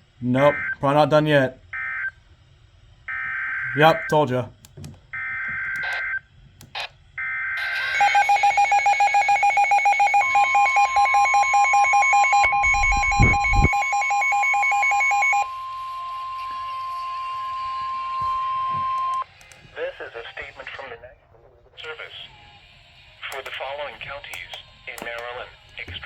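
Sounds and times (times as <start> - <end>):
steady warning tone: 6.8 - 19.3
alert alarm beeping rapidly: 7.6 - 15.5
screeching two-pitch data tones: 7.6 - 19.2.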